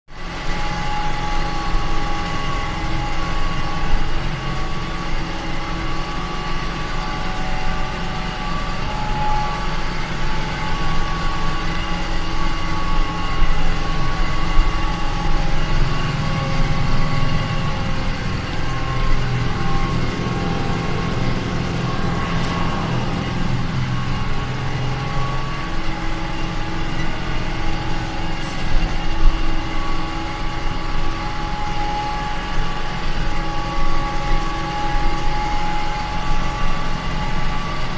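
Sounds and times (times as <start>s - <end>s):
tractor diesel engine running: 0.1s - 37.9s
steady whine: 0.2s - 37.9s.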